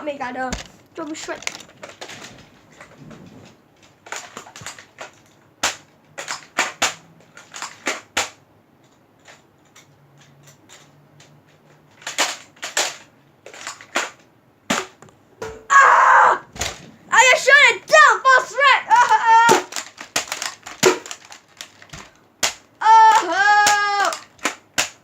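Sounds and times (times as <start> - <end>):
toy blaster clicks and pops: 18.9 - 25.0.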